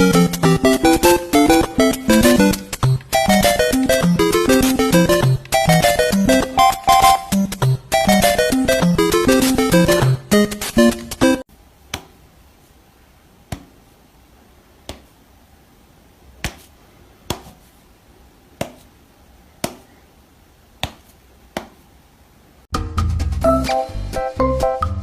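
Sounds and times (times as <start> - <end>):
sharp single taps: 16.4 - 16.7, 19.6 - 19.9.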